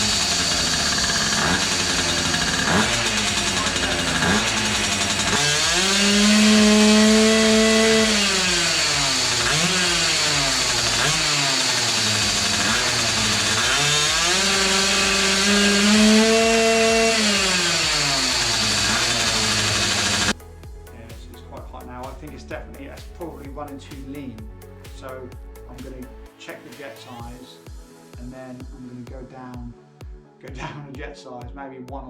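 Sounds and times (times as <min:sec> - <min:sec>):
small two-stroke engine revving: 0:00.0 - 0:20.4.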